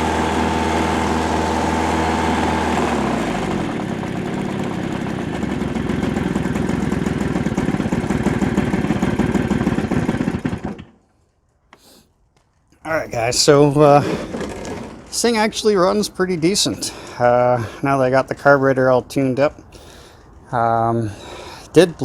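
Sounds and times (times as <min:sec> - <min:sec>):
two-stroke engine running rough: 0:00.0 - 0:11.0, 0:14.0 - 0:15.1.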